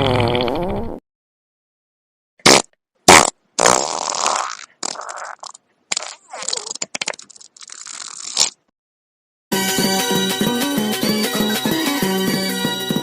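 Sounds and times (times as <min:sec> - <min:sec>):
farts: 0:00.0 - 0:01.0, 0:02.5 - 0:06.7.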